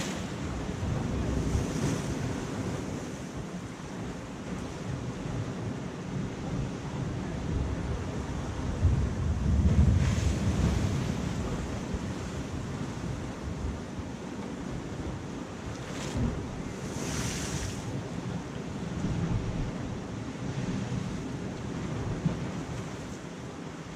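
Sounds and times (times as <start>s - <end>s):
waves washing against rocks: 0.0s - 5.4s, 7.0s - 13.9s, 14.8s - 23.2s
wind buffeting microphone: 6.2s - 14.0s, 14.8s - 23.0s.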